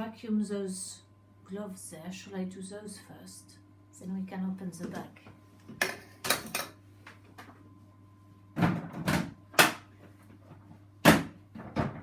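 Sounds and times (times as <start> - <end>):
faint steady hum: 0.0 - 12.0
knocks and clunks of handling: 8.6 - 12.0.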